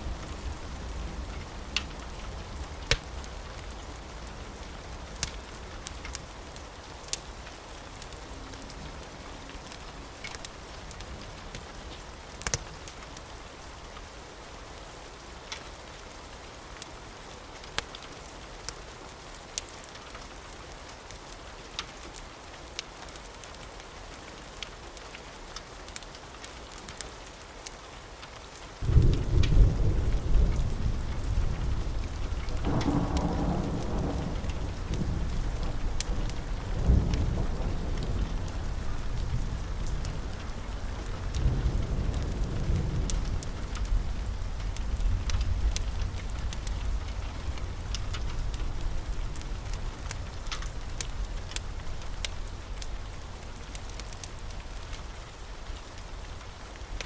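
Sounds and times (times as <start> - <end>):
fireplace crackling: 0.0 - 14.1, 25.4 - 27.8, 43.1 - 57.0
steady rain: 0.0 - 57.0
thunder rumbling: 28.8 - 55.0.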